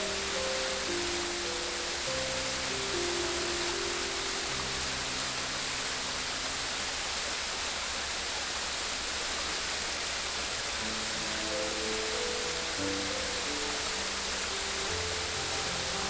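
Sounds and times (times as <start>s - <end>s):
soft sustained music notes: 0.0s - 7.6s, 10.7s - 16.0s
rushing water: 0.0s - 16.0s.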